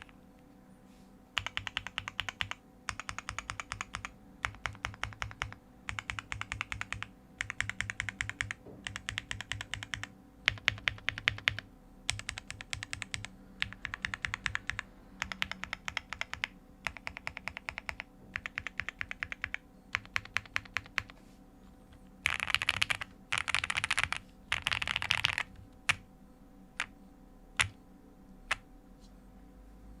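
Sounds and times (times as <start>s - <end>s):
mechanical keyboard typing: 1.4s - 21.2s, 22.2s - 26.0s, 27.6s - 27.8s.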